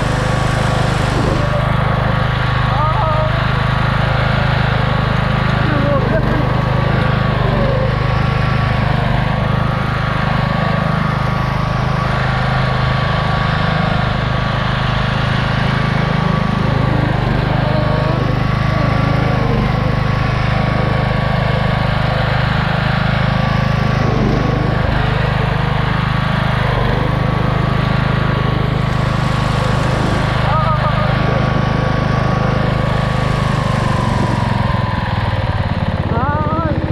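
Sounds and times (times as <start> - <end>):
high-pitched engine whine: 0.0 - 36.9
lawn mower engine running: 0.0 - 36.9.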